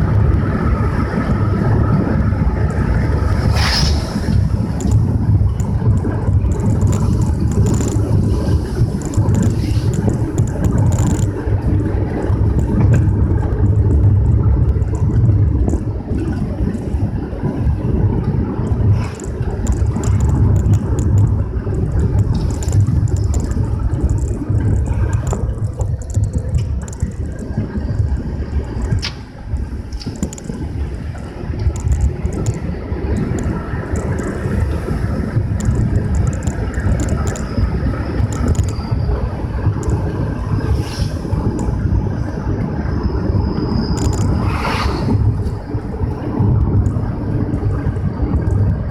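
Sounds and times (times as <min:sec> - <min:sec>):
vehicle engine and road rumble: 0:00.0 - 0:48.9
small ticks and clicks: 0:02.6 - 0:17.1, 0:18.2 - 0:41.8, 0:43.8 - 0:48.9
short hiss: 0:03.5 - 0:04.3.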